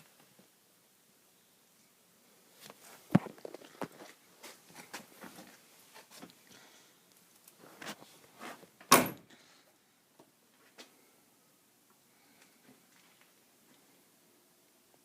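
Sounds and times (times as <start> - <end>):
loud clunk: 8.9 - 9.2.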